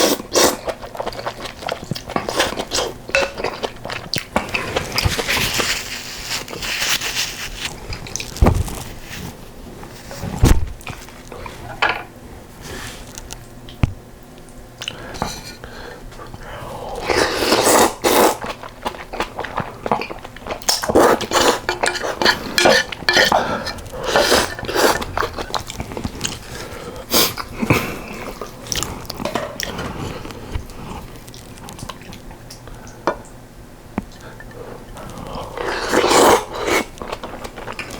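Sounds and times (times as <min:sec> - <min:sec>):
chewing food: 0:00.0 - 0:05.8, 0:18.4 - 0:33.0, 0:34.0 - 0:37.9.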